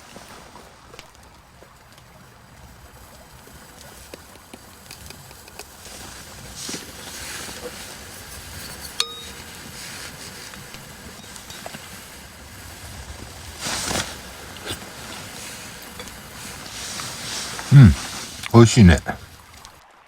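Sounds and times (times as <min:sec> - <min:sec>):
tableware clink: 0:08.7 - 0:09.6
low steady background: 0:13.1 - 0:19.5.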